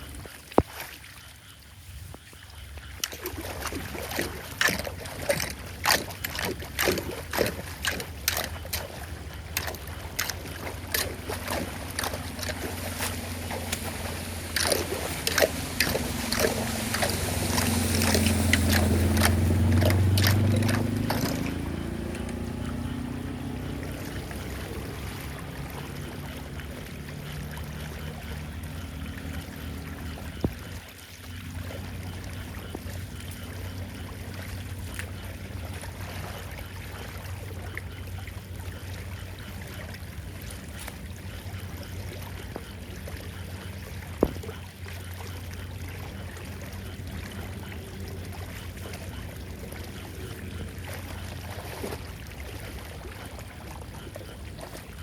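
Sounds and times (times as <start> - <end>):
floodwater splashing and sloshing: 0.0 - 55.0
water rushing: 0.0 - 55.0.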